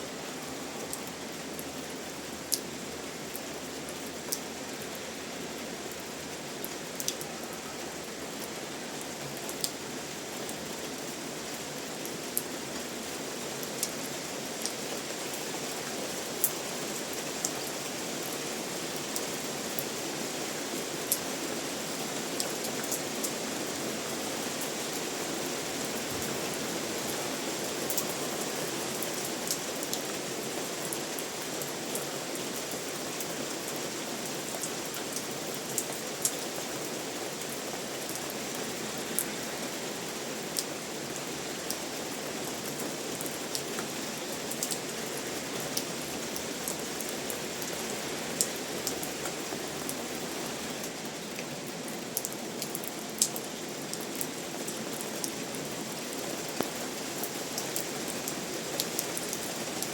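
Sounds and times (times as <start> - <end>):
steady rainfall: 0.0 - 59.9
raindrops dripping on a surface: 0.1 - 59.9.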